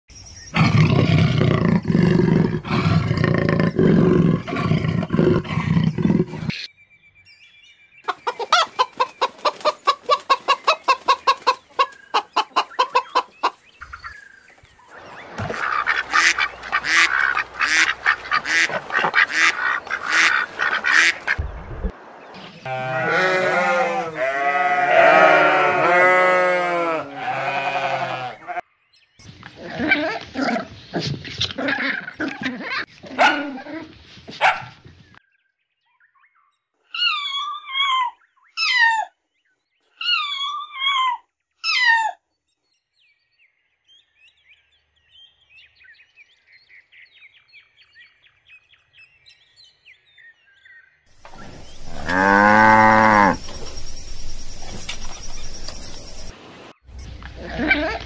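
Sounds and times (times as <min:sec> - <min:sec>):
farm animals calling: 0:00.5 - 0:06.7, 0:08.0 - 0:21.4, 0:22.6 - 0:28.6, 0:29.4 - 0:34.7, 0:51.1 - 0:56.3, 0:56.9 - 0:58.0.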